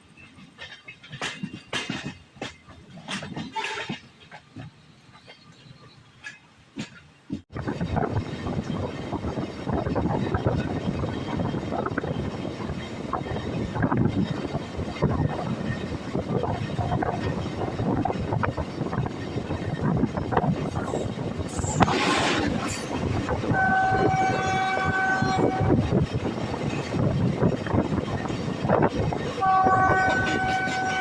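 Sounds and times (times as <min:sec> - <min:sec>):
train rumbling on rails: 0:00.0 - 0:31.0
train horn: 0:23.5 - 0:25.9, 0:29.4 - 0:31.0.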